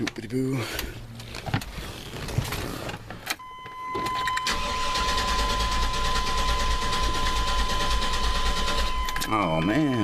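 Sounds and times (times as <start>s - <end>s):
starter motor cranking engine: 4.5s - 8.9s.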